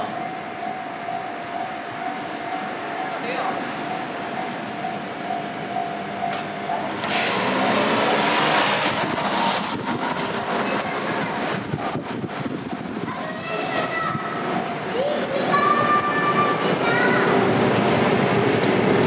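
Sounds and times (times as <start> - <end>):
crossing warning bell ringing: 0.0 - 9.0, 10.2 - 11.4, 13.4 - 17.6
train rushing past: 0.0 - 19.0.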